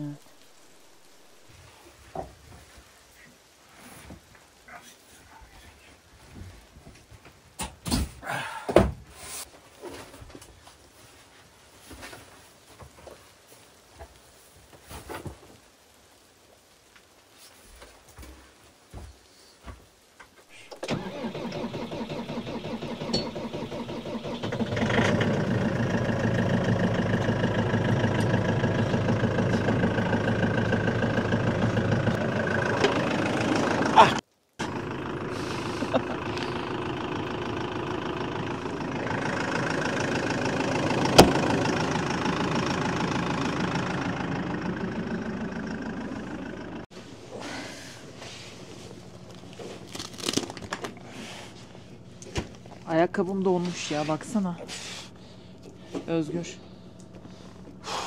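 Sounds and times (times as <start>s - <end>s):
engine starting and running: 20.7s - 53.9s, 54.6s - 58.0s.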